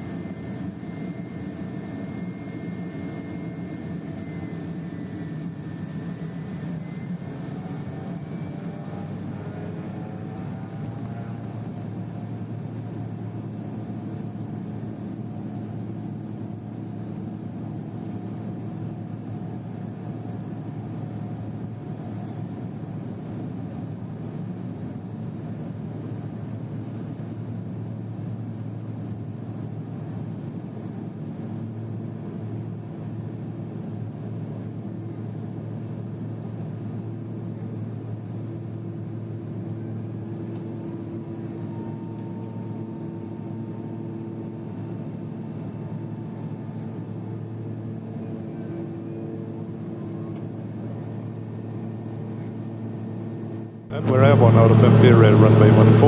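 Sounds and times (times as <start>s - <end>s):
turboprop engine drone from cabin: 0.0s - 56.0s.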